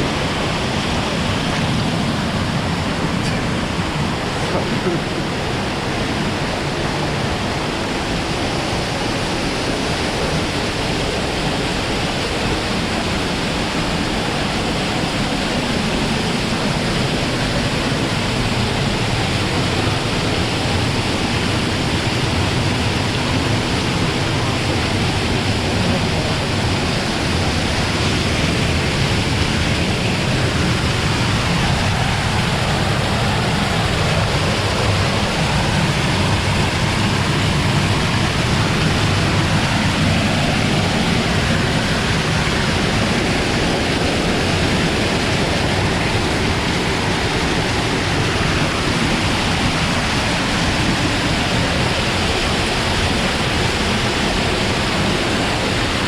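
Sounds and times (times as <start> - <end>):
stream water rushing: 0.0 - 56.0.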